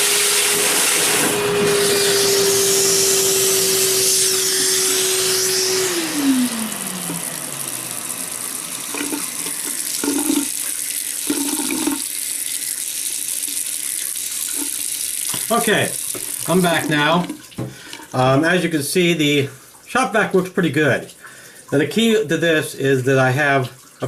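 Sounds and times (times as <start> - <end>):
shop vac whining: 0.0 - 18.4
tap water hissing: 0.0 - 24.0.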